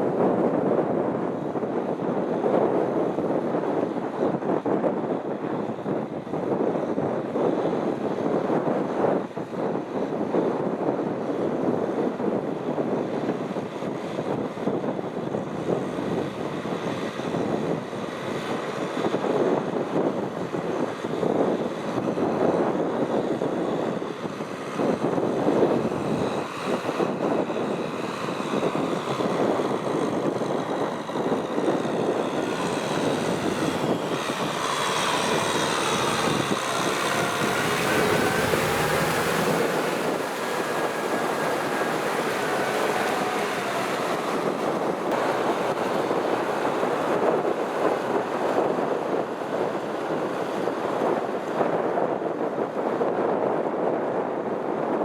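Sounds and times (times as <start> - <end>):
tractor diesel engine running: 23.2 - 51.5.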